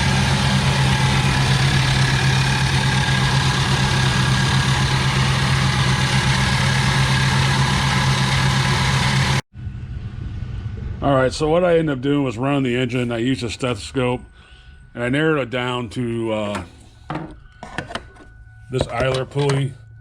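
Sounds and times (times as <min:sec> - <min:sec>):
car engine idling: 0:00.0 - 0:11.4.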